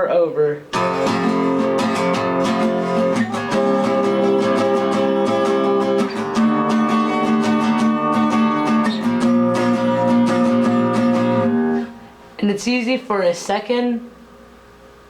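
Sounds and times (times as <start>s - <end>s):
acoustic guitar strumming: 0.7s - 12.2s.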